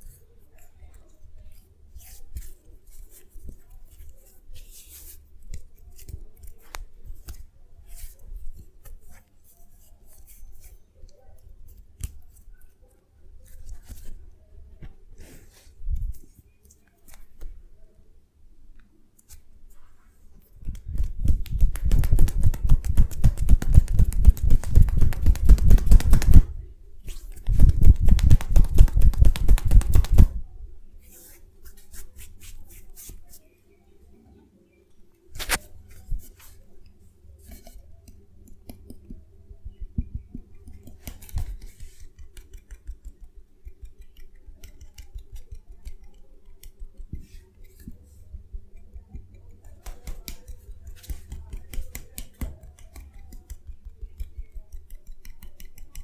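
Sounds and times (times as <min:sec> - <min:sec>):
rapid percussive massage taps: 0:20.7 - 0:26.5, 0:27.4 - 0:30.3, 0:48.4 - 0:56.0.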